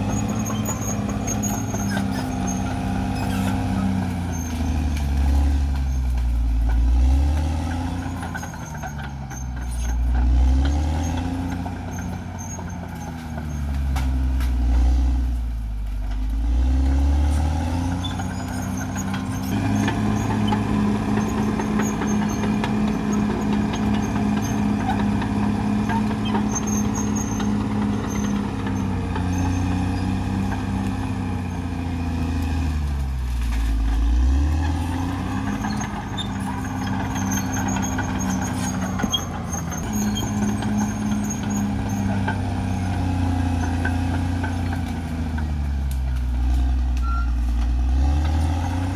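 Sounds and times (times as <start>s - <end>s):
bulldozer diesel engine working: 0.0s - 48.9s
faint high-pitched squeaks: 0.1s - 6.2s.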